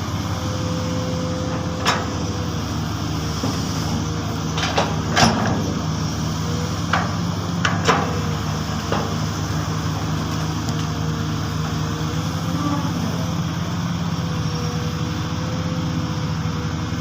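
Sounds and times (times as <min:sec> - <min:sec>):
excavator diesel engine running: 0:00.0 - 0:17.0
metal clanks and knocks: 0:01.5 - 0:02.4, 0:03.4 - 0:05.9, 0:06.8 - 0:09.4.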